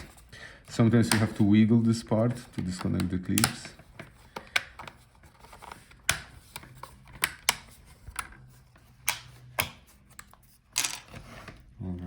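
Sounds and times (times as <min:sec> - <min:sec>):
plastic clips snapping: 0:02.6 - 0:05.0.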